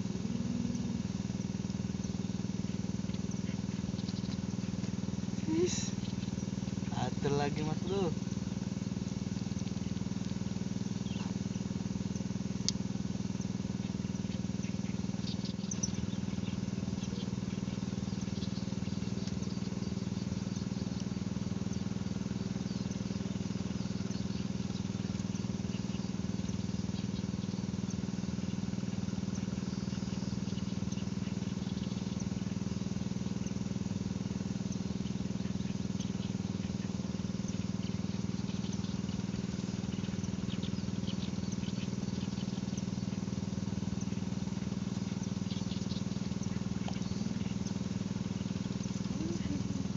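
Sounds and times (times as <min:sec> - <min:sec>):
faint high chirps: 0:00.0 - 0:04.7, 0:34.6 - 0:49.9
constant low drone: 0:00.0 - 0:49.9.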